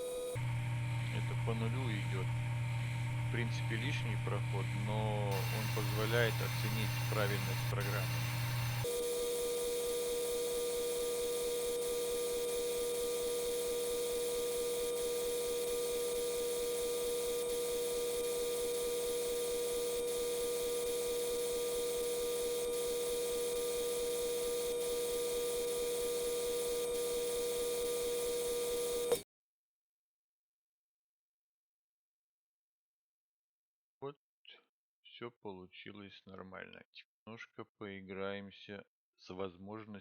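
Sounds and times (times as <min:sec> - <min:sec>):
electrical hum: 0:00.0 - 0:29.2.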